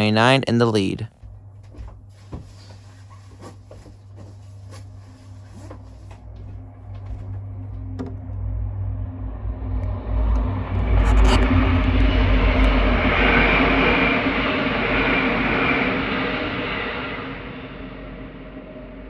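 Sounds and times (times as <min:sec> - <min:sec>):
diesel train approaching: 0:05.1 - 0:10.7.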